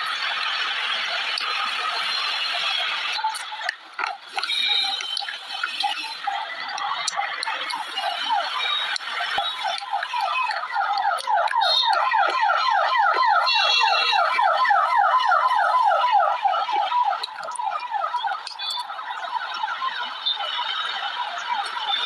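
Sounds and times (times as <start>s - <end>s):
electronic alarm repeated falling note: 4.5s - 22.0s.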